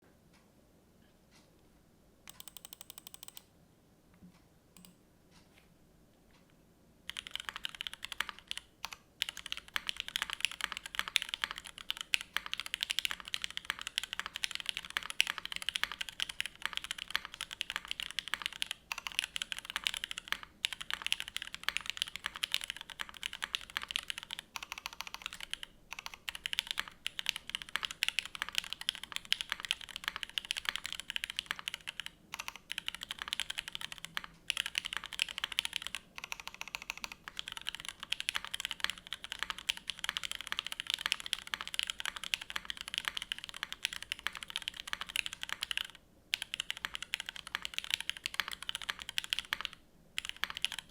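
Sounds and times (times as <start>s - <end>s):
mechanical keyboard typing clacks: 2.3s - 3.4s, 7.1s - 50.9s.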